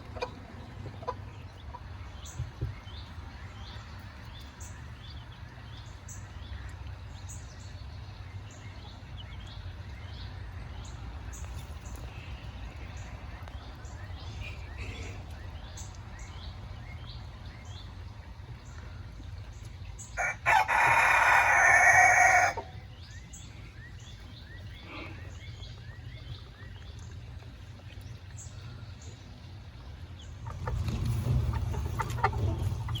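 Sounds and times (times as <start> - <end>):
rooster crowing: 20.2 - 22.7
low rumble: 30.3 - 33.0.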